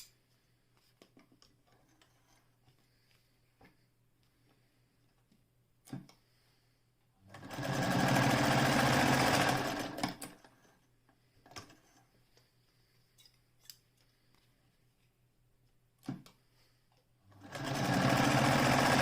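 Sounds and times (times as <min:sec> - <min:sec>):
electric sewing machine stitching: 0:07.3 - 0:10.4, 0:17.3 - 0:19.0.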